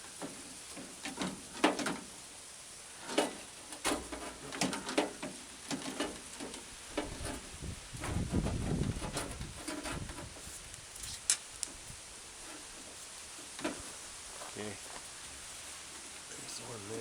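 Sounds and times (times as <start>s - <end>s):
seal scraping in metal track: 3.0s - 14.0s.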